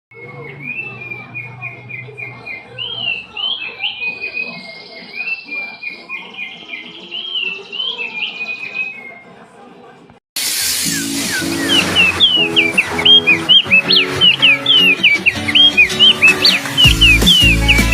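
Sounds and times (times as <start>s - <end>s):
bird singing whistled notes: 10.8s - 17.9s.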